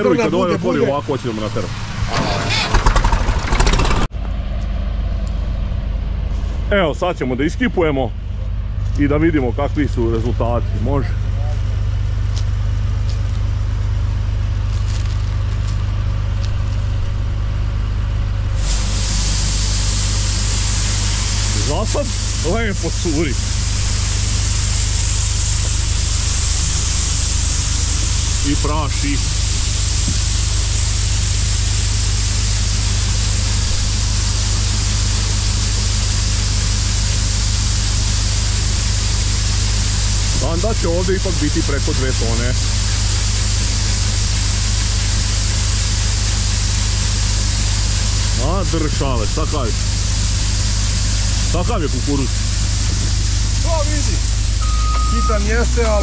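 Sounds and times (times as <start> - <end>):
combine harvester droning: 0.0 - 56.0
tractor engine running: 0.0 - 56.0
corn pouring hiss: 18.6 - 56.0.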